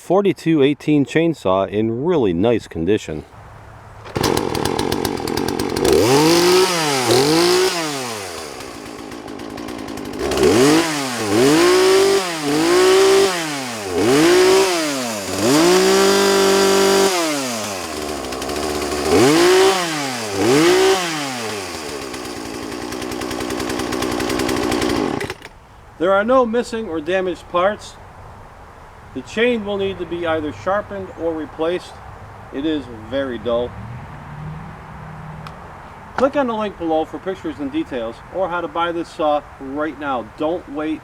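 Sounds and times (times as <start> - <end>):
chainsaw revving and idling: 4.0 - 25.6, 32.6 - 33.7, 36.2 - 39.0.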